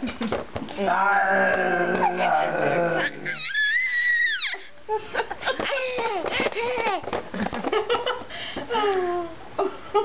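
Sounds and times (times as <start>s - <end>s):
person making silly vocal noises: 0.9s - 3.5s.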